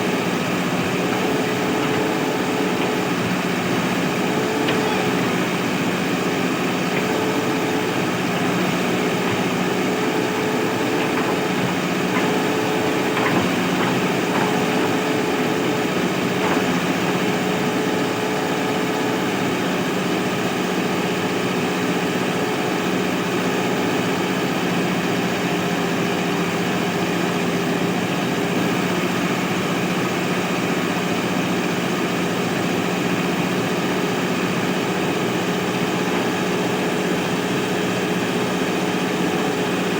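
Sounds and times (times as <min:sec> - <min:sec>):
diesel engine running: 0:00.0 - 0:39.9
faint knocks: 0:00.8 - 0:05.9, 0:06.8 - 0:17.3.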